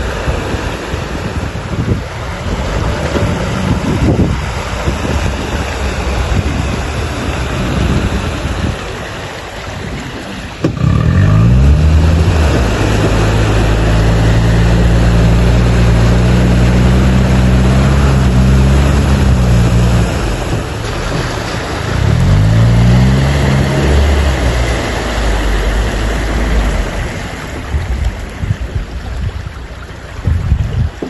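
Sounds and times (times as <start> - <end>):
wind rushing: 0.0 - 10.7
atv engine revving: 2.1 - 9.3, 10.1 - 28.0.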